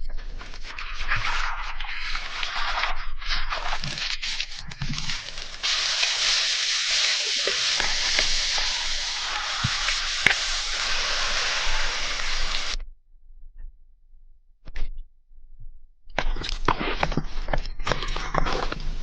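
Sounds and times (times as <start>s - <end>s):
clicks and crackles: 0.0s - 10.8s, 16.1s - 19.0s
food sizzling in a pan: 5.0s - 12.8s.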